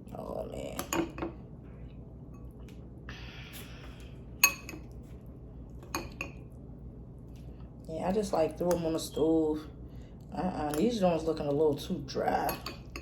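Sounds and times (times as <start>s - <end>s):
utensil clinking against dish: 4.4s - 5.0s, 12.3s - 13.0s.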